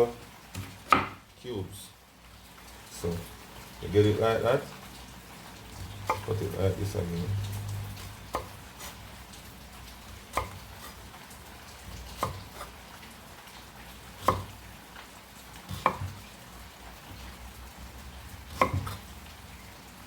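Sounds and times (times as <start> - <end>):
knife knocking on cutting board: 0.9 - 1.2, 18.6 - 19.0.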